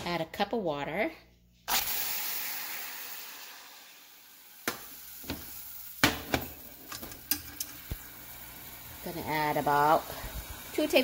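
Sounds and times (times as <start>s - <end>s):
water hissing in hot pan: 1.7s - 11.0s.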